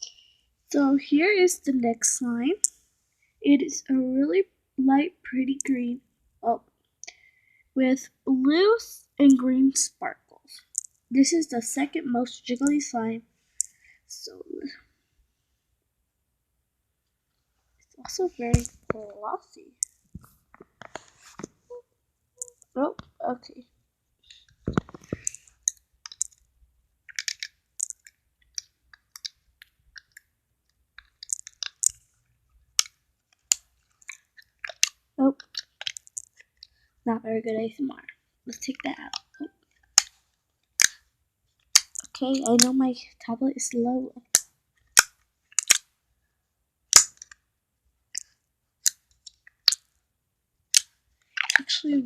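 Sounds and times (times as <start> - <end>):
slime squished clicks and pops: 40.8 - 41.0, 44.3 - 45.8, 46.9 - 47.4.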